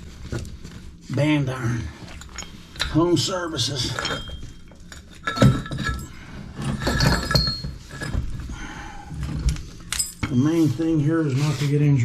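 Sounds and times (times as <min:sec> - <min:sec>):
metal clinking and clanking: 0:02.1 - 0:08.6, 0:09.2 - 0:10.6.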